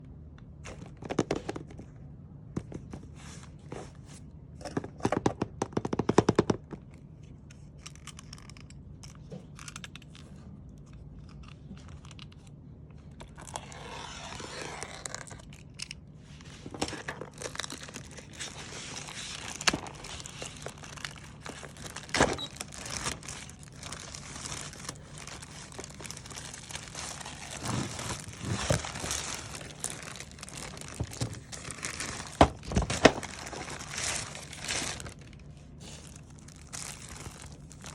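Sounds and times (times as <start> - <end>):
wrapping crinkling and tearing: 13.2 - 37.9.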